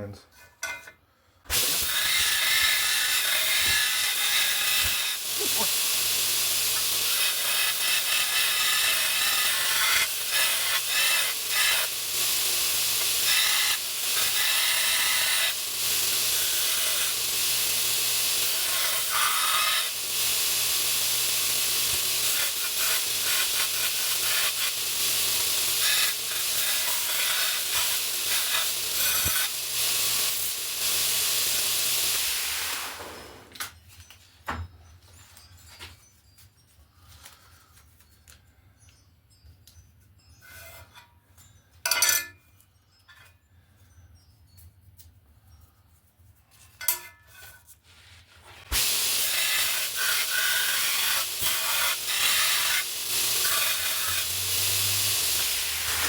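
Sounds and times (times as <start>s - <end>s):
grinder grinding steel: 1.5s - 33.5s, 48.2s - 56.0s.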